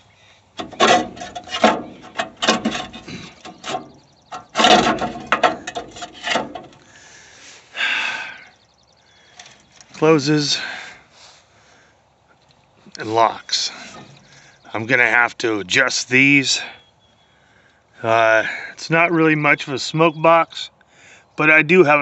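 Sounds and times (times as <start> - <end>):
metal door grating scrape: 0.6 - 6.8
metal clanks and rattles: 0.6 - 6.9.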